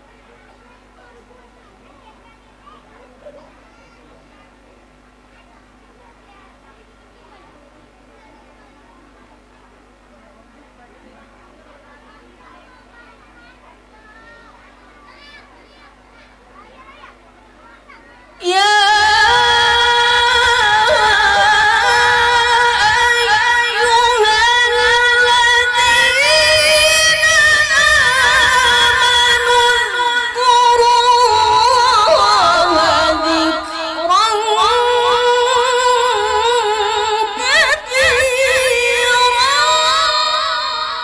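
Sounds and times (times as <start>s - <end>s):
woman reciting melodically: 18.4s - 41.0s.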